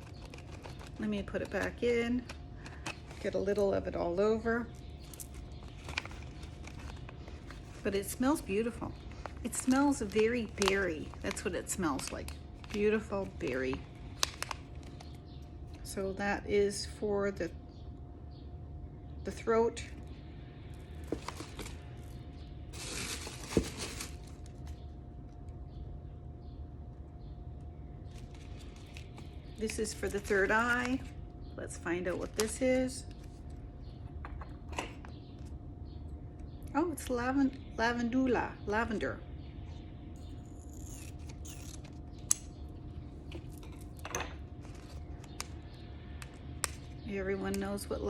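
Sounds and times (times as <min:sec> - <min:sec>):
bag crinkling and rustling: 0:00.0 - 0:01.6, 0:04.9 - 0:07.9, 0:21.0 - 0:24.8, 0:28.1 - 0:31.1
packet rustling: 0:00.0 - 0:03.7, 0:04.7 - 0:15.7, 0:20.9 - 0:24.9, 0:28.1 - 0:31.2, 0:43.2 - 0:47.0
steady low hum: 0:00.0 - 0:48.0.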